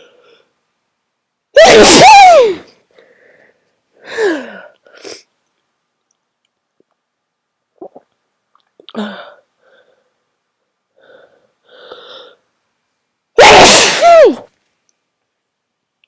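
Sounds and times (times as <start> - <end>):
person sneezing: 1.6 - 2.7, 13.4 - 14.5.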